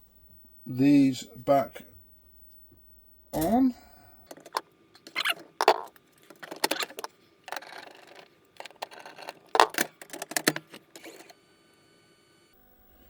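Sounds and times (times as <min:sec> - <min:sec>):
clicks and knocks of parts fitted: 0:04.3 - 0:11.3.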